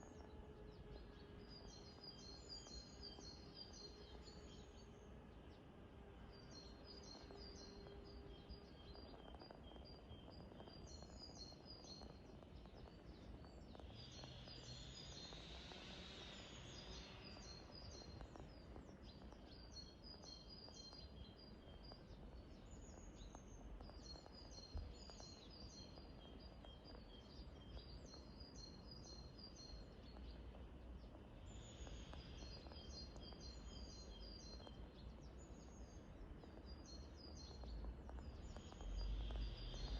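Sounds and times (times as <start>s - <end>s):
songbird singing: 0.0s - 39.9s
background hiss: 9.4s - 39.9s.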